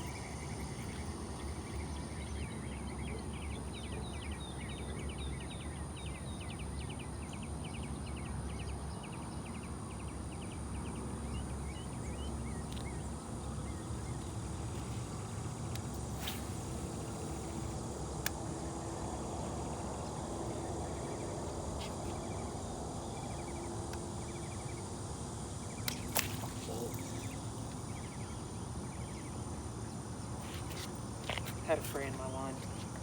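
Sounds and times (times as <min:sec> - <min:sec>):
insect chirping trills: 0:00.0 - 0:33.0.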